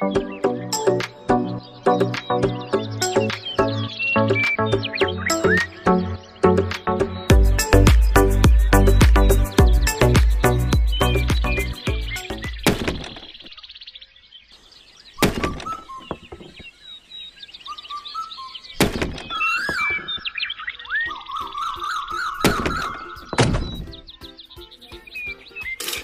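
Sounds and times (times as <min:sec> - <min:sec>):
music: 0:00.0 - 0:12.6, 0:21.1 - 0:26.0
sharp thunks: 0:12.6 - 0:13.3, 0:15.2 - 0:16.7, 0:18.8 - 0:20.2, 0:22.4 - 0:24.0.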